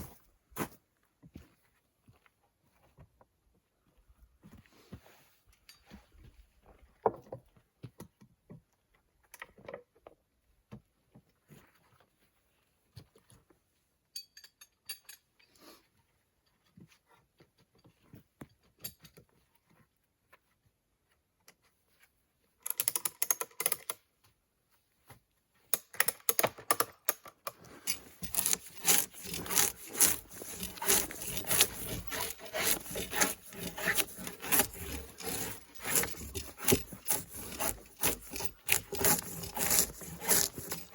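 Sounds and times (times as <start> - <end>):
handsaw cutting wood: 27.8 - 40.9.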